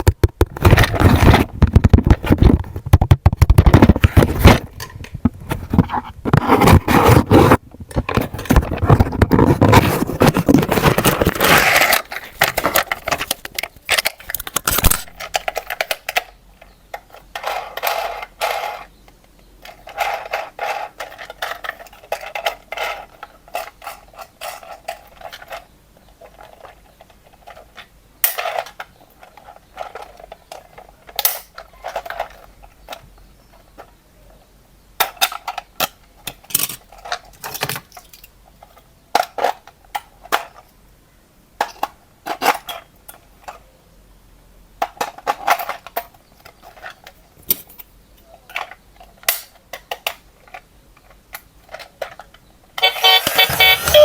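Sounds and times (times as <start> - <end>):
plastic packaging rustling: 0.0 - 16.0
plastic toy parts clicking: 10.8 - 18.9, 19.6 - 33.1, 35.0 - 40.6, 44.8 - 54.0.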